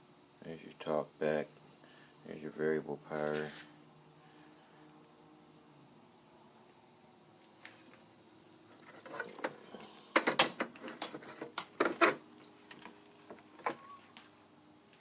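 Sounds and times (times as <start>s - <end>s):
clicks and taps handling radio parts: 8.9s - 14.3s.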